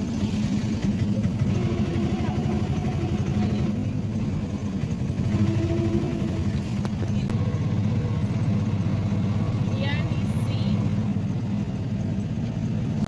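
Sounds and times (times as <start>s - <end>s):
auto-rickshaw engine running: 0.0s - 13.0s.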